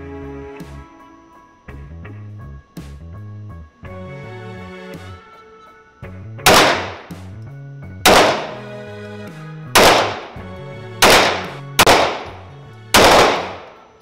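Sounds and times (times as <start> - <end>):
background music: 0.0 - 14.0
pistol shots: 6.4 - 7.2, 8.0 - 8.8, 9.8 - 10.4, 11.0 - 13.9.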